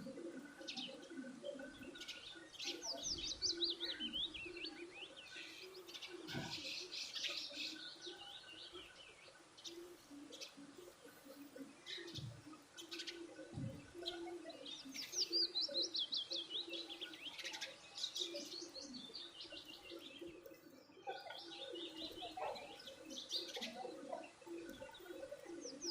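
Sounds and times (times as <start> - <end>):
small birds chirping: 0.0 - 25.9.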